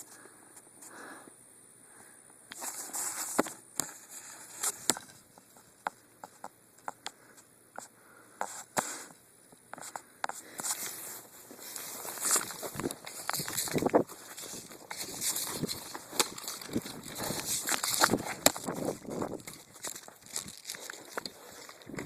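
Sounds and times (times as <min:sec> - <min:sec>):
footsteps rustling through ground cover: 0:09.8 - 0:22.0
twigs snapping: 0:11.6 - 0:22.0.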